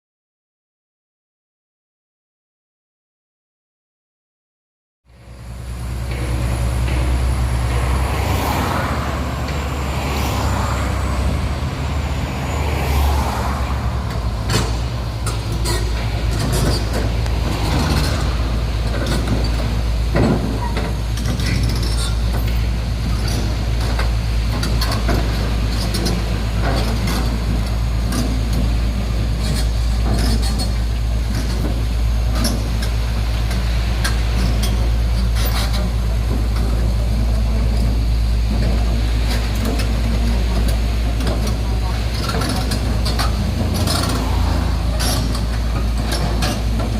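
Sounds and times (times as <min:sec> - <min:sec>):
diesel engine droning: 0:05.1 - 0:46.9
metallic clanks and knocks: 0:05.9 - 0:08.5, 0:14.1 - 0:22.6.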